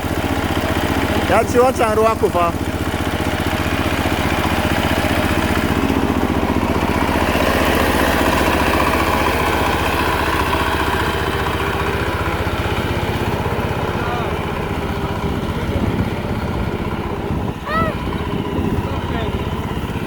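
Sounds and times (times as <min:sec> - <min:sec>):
small engine running: 0:00.0 - 0:20.0.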